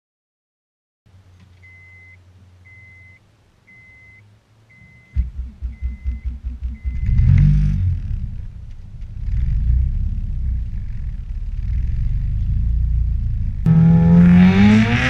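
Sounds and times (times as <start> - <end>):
car engine starting and idling: 1.1 - 15.0
car warning chime beeping: 1.6 - 7.3.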